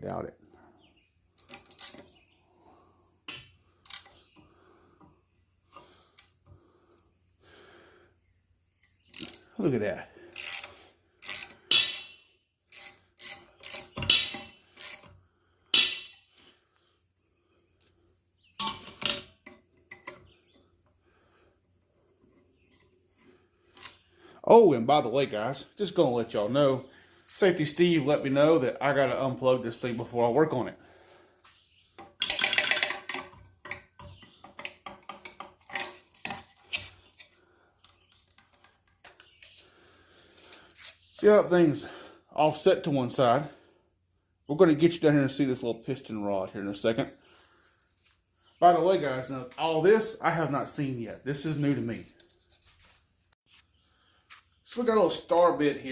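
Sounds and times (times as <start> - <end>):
metal parts and tools clinking: 10.3 - 15.2, 18.6 - 20.3, 23.7 - 24.0, 32.0 - 39.4
ratchet wrench clicking: 10.4 - 12.0
metal parts clinking: 32.2 - 33.8.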